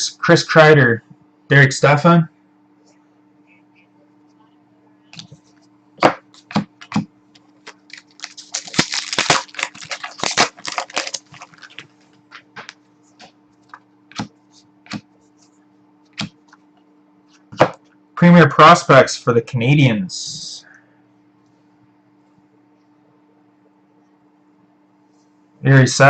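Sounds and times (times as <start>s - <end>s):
trading cards clicking and rustling: 6.3s - 14.3s.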